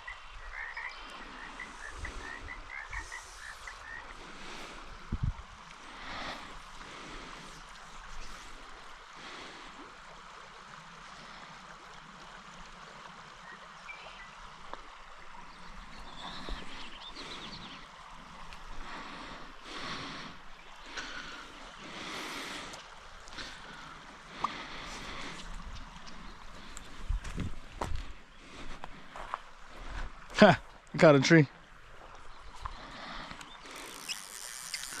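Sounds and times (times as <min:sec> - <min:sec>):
stream water running over rocks: 0:00.0 - 0:35.0.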